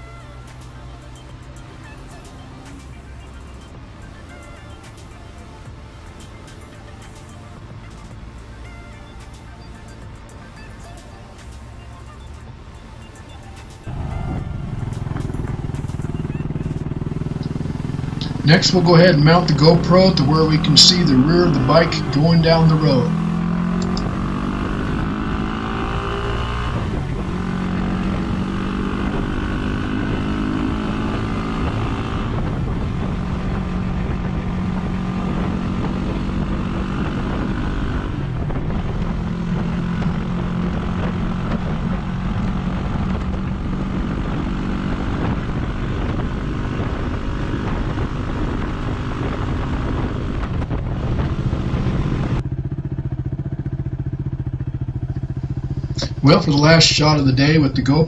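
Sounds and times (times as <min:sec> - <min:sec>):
motorcycle engine running: 0:00.0 - 0:58.0
wind noise: 0:40.9 - 0:52.4.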